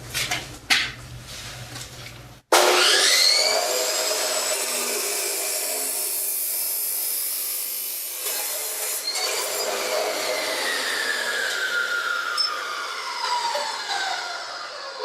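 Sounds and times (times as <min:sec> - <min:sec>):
chop saw grinding through steel: 0:02.5 - 0:15.0
saw blade whine spinning down: 0:02.6 - 0:06.3, 0:09.0 - 0:15.0.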